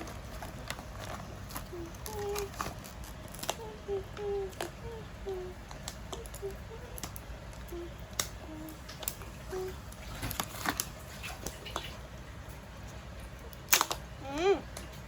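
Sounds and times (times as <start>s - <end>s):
wrappers crinkling: 0.0s - 3.7s, 8.8s - 12.0s
plastic toys clicking and tapping: 0.0s - 10.9s, 13.3s - 14.9s.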